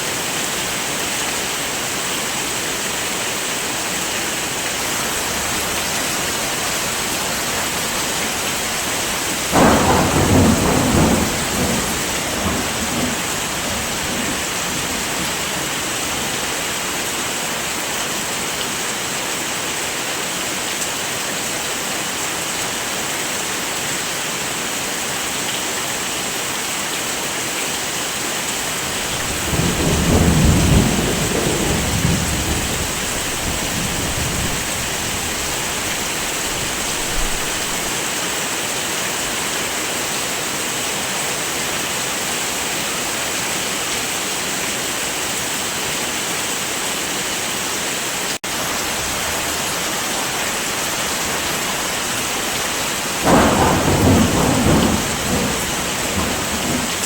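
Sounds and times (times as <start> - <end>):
heavy rain hissing: 0.0 - 57.0
thunder rolling: 5.2 - 16.3, 28.8 - 37.9, 53.2 - 57.0.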